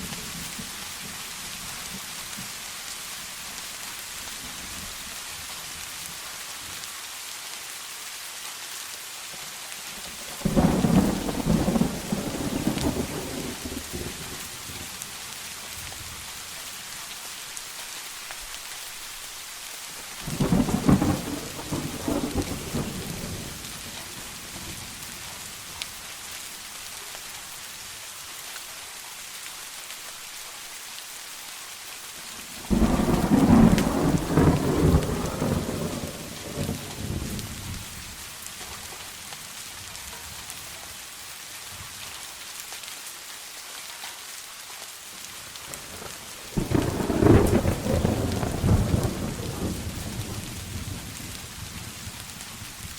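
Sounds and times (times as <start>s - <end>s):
heavy rain: 0.0s - 52.9s
thunder claps rumbling: 10.3s - 14.8s, 20.2s - 24.8s, 32.6s - 37.9s, 45.8s - 52.1s.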